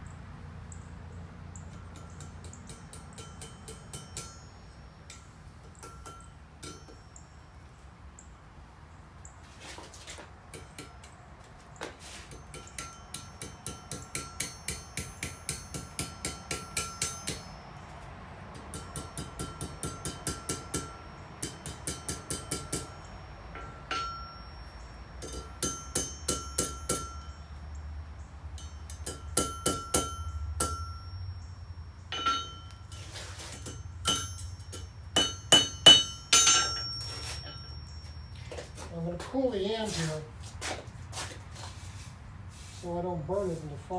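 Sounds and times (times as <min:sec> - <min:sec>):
hammer striking iron on anvil: 0:01.7 - 0:07.2, 0:10.5 - 0:11.1, 0:12.3 - 0:17.9, 0:18.5 - 0:27.7, 0:28.5 - 0:38.5.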